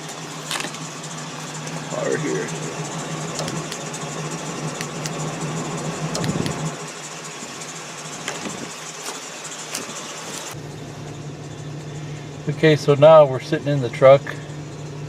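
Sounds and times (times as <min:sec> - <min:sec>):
clicks and handling noise: 0:00.0 - 0:01.8, 0:03.3 - 0:03.9, 0:04.6 - 0:05.3, 0:06.1 - 0:06.7, 0:08.2 - 0:10.6
truck engine idling: 0:00.0 - 0:15.0.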